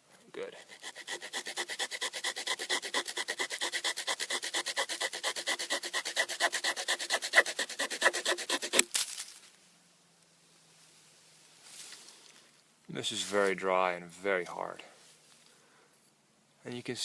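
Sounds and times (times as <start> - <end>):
small saw cutting hard wood: 0.5 - 8.9.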